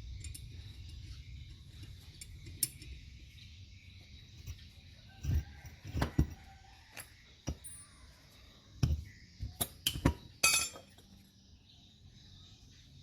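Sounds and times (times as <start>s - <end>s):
metal tools clinking and knocking: 1.7s - 3.1s, 4.3s - 11.2s.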